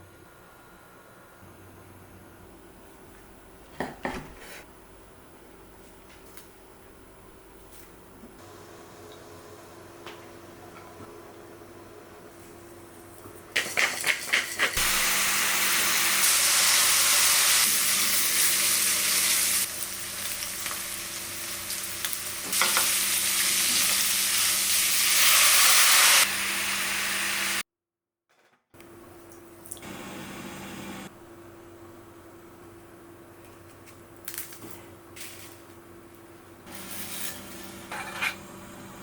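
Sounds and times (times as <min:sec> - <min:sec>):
food sizzling in hot oil: 0:13.7 - 0:27.6.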